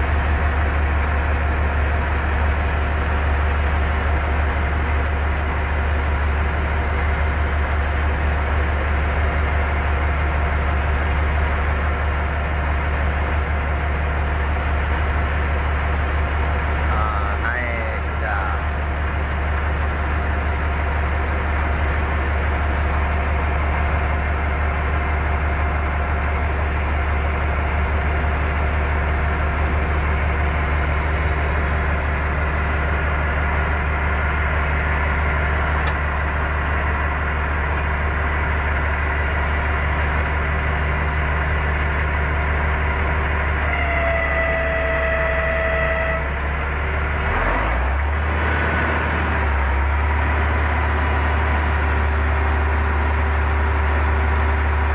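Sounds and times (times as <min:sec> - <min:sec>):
diesel engine running: 0:00.0 - 0:54.9
brief steady tone: 0:43.6 - 0:46.3.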